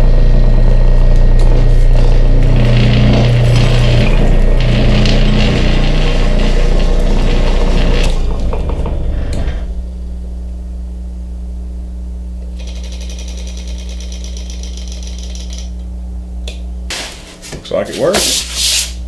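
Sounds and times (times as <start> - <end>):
electric motor humming: 0.0 - 14.8
high-pitched rattle: 12.5 - 15.7.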